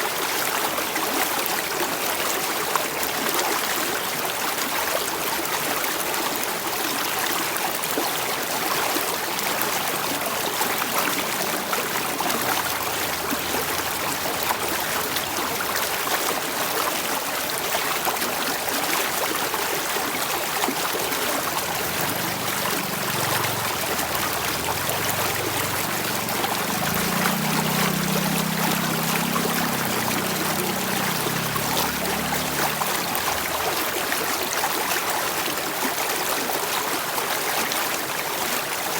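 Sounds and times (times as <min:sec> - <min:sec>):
running water: 0:00.0 - 0:38.9.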